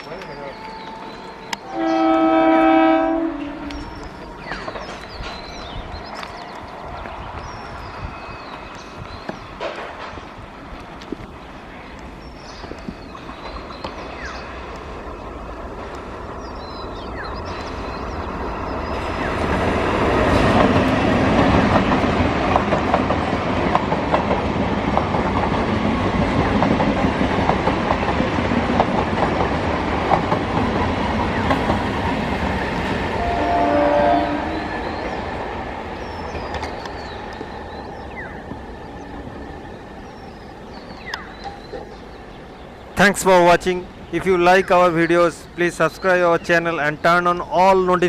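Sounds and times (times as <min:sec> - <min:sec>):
train horn: 0:00.4 - 0:03.9, 0:33.2 - 0:34.9
birds chirping faintly: 0:03.3 - 0:19.6, 0:32.6 - 0:48.0
train wheels clattering over rail joints: 0:08.8 - 0:11.4, 0:18.9 - 0:33.2.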